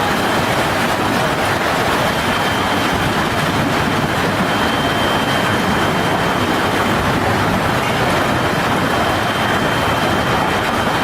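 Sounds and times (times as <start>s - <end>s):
strong wind: 0.0s - 11.0s.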